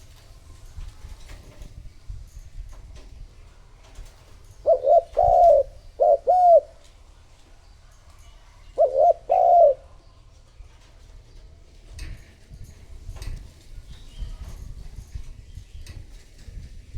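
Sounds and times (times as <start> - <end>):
dove cooing: 4.5 - 7.0, 8.6 - 10.4.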